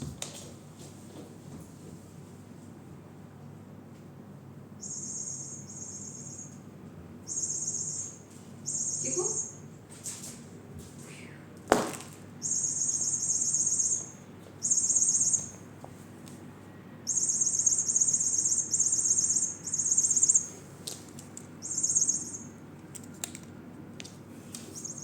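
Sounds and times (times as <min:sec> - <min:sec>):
toy trilling bird-like chirps: 0:04.8 - 0:06.6, 0:07.2 - 0:09.6, 0:12.4 - 0:15.6, 0:17.1 - 0:20.5, 0:21.6 - 0:22.6, 0:24.8 - 0:25.0.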